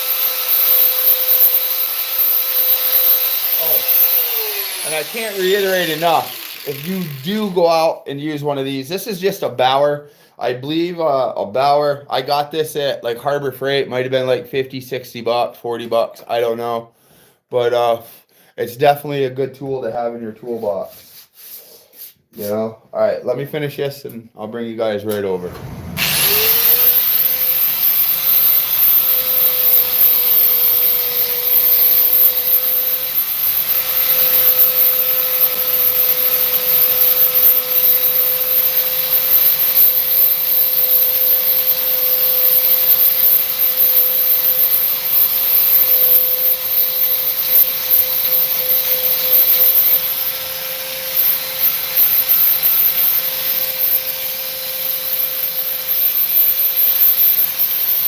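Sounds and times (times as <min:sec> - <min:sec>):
electric sander grinding: 0:00.0 - 0:07.7, 0:25.4 - 0:58.0.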